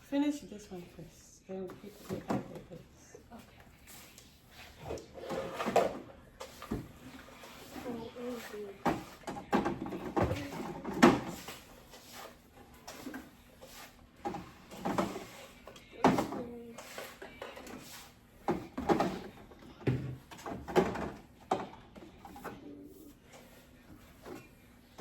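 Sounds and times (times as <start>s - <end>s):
groceries knocking on fridge shelves: 8.8s - 11.5s, 18.4s - 22.1s.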